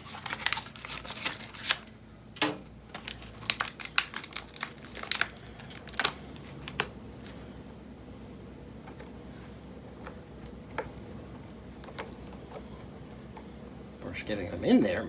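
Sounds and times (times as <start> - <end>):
plastic packaging crinkling: 0.0 - 1.9, 2.9 - 7.4.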